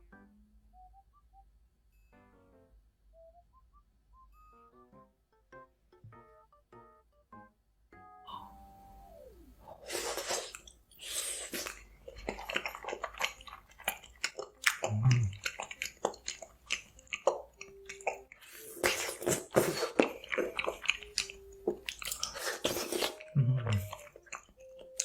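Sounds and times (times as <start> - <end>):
biting and chewing: 9.7 - 25.0
wet mouth clicks: 9.8 - 25.0.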